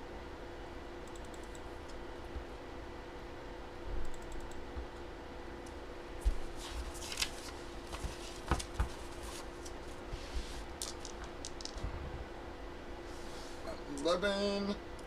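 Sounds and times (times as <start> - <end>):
steady electrical hum: 0.0 - 15.0
rustles of desk handling: 6.2 - 12.0.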